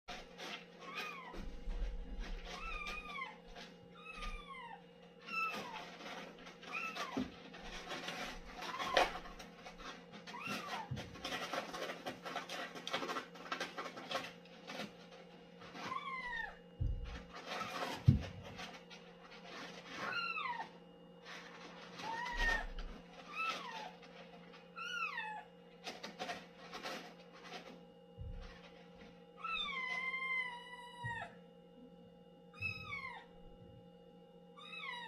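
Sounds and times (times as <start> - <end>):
scratchy rustling in litter: 0.1 - 30.8
cat meowing: 32.6 - 33.4, 34.6 - 35.0.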